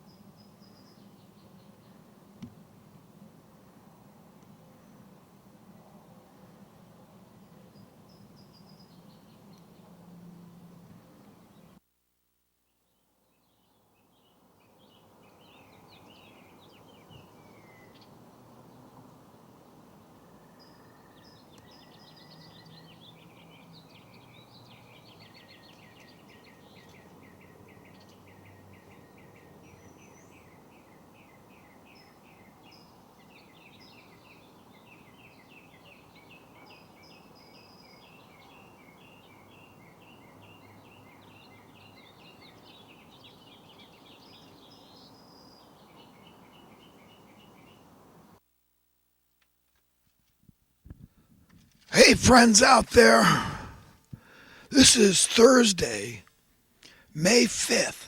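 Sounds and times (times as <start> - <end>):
faint background noise: 0.0 - 58.0
small birds chirping and trilling: 7.7 - 9.8, 13.2 - 18.8, 20.6 - 47.9.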